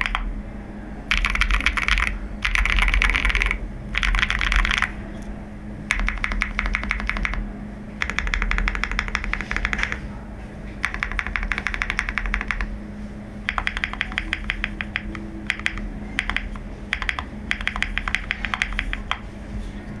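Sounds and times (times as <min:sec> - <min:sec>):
mechanical keyboard typing: 0:00.0 - 0:00.3, 0:01.1 - 0:04.9, 0:05.9 - 0:07.4, 0:08.0 - 0:10.0, 0:10.8 - 0:12.7, 0:13.4 - 0:19.2.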